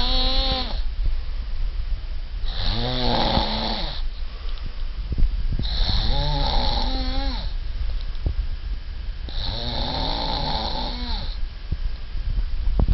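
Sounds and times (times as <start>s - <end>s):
rasping snores: 0.0s - 0.8s, 2.4s - 4.0s, 5.6s - 7.6s, 9.3s - 11.4s
steady low rumble: 0.0s - 12.9s.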